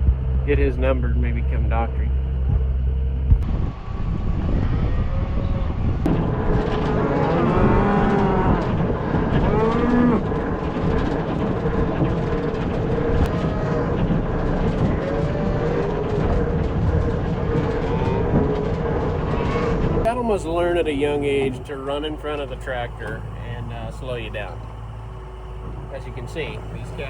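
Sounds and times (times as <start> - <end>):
tractor engine running: 0.0 - 4.2, 6.0 - 27.0
cows mooing: 6.5 - 27.0.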